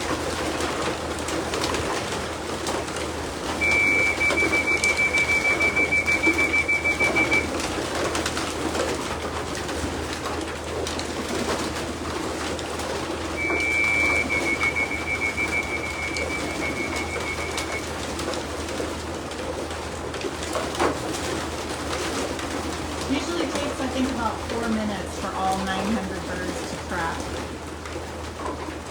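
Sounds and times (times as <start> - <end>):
high pulsing beep: 3.6 - 7.5, 13.4 - 17.8
pigeons cooing: 3.6 - 7.7, 13.4 - 17.9.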